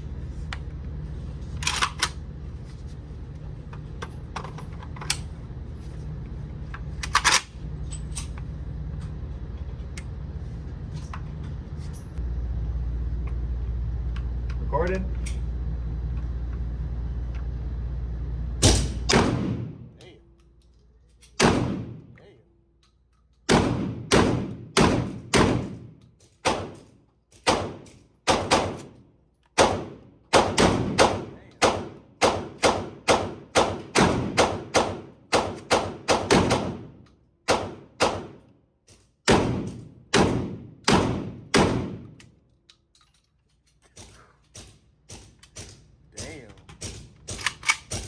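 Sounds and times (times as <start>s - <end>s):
shotgun firing rapidly: 18.6s - 19.8s, 21.4s - 22.0s, 23.5s - 25.8s, 27.5s - 28.9s, 29.6s - 36.9s, 37.5s - 38.4s, 39.3s - 42.0s.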